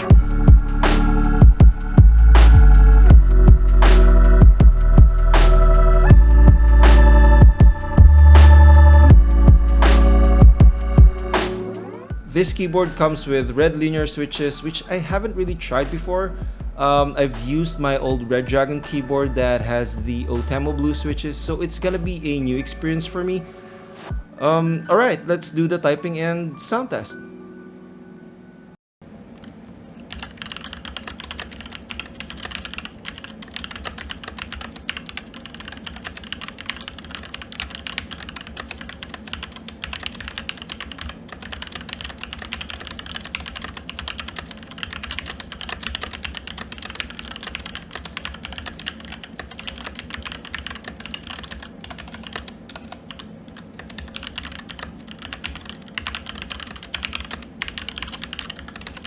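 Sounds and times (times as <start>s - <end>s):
fast typing keystroke clacks: 29.4s - 59.0s.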